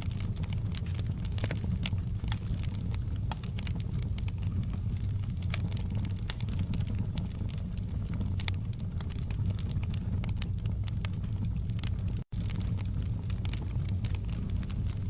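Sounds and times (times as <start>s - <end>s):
logs crackling and popping: 0.0s - 15.0s
low rumble of flames: 0.0s - 15.0s.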